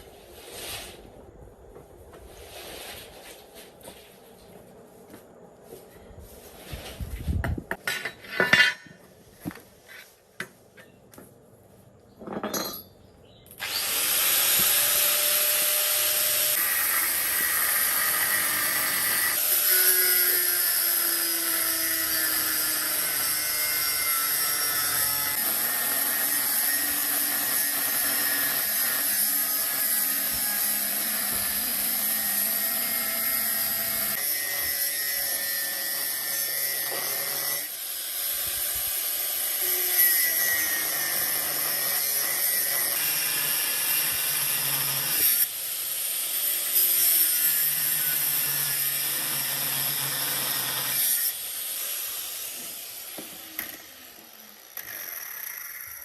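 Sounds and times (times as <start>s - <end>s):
power tool working metal: 13.6s - 56.0s.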